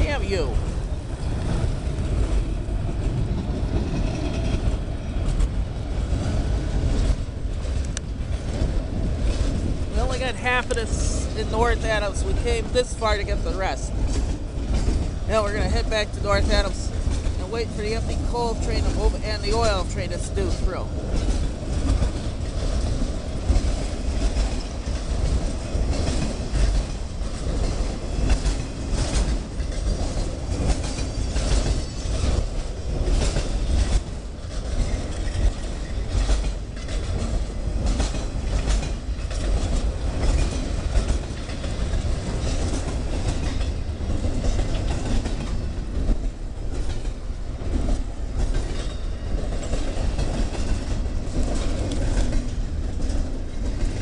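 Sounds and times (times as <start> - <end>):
train rumbling past: 0.0 - 54.0
wheels clicking over rail joints: 0.1 - 54.0.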